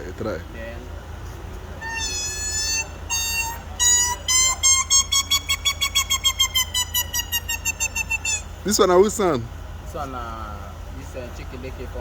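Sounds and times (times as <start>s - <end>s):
man imitating parrot call: 1.8s - 8.8s.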